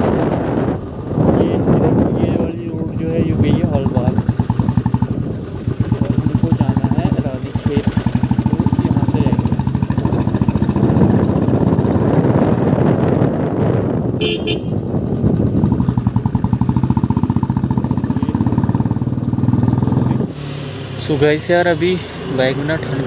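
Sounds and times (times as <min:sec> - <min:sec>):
motorcycle engine running: 0:00.0 - 0:23.0
horn beep: 0:14.2 - 0:14.8.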